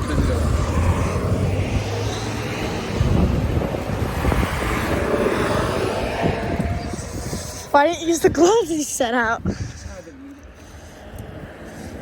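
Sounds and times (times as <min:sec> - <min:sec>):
highway traffic passing: 0:00.0 - 0:12.0.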